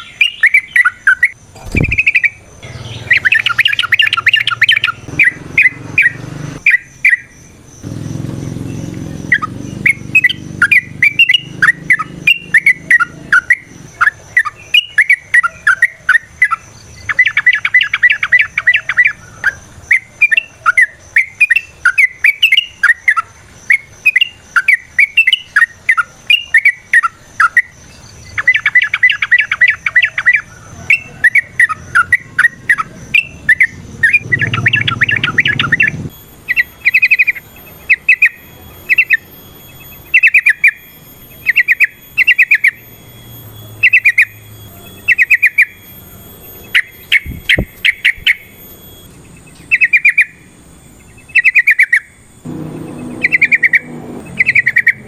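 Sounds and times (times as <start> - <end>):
bird singing chattering phrases: 0.0 - 52.2, 52.8 - 55.0
bird rolling trill: 51.4 - 55.0.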